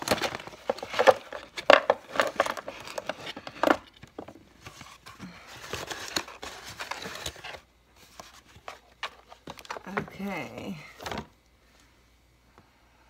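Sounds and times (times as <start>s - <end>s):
packing material rustling: 4.6s - 9.9s.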